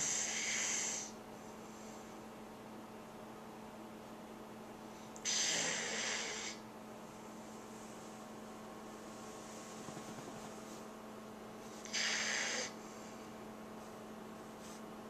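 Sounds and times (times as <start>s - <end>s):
dog snoring: 0.0s - 1.1s, 5.2s - 6.6s, 11.8s - 13.1s
steady low hum: 0.0s - 15.0s.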